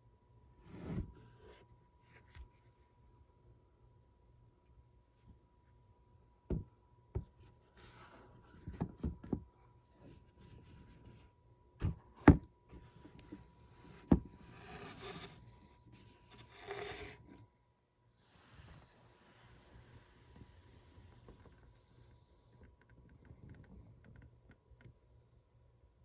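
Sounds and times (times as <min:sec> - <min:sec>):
soft rubbing and rustling: 0:18.2 - 0:21.8.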